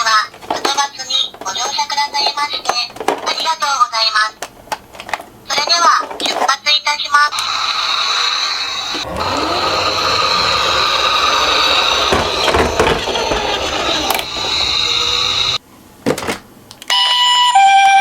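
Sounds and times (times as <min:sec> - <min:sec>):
toy cars rolling down a slope: 0:07.4 - 0:15.6.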